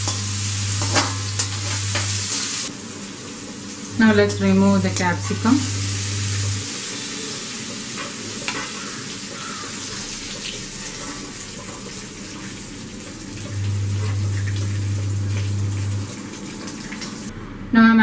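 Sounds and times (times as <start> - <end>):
spatula scraping pan: 0.0 - 2.7, 4.0 - 16.3
vegetables sizzling in oil: 0.0 - 17.3
steady low hum: 3.9 - 6.7, 10.4 - 16.2.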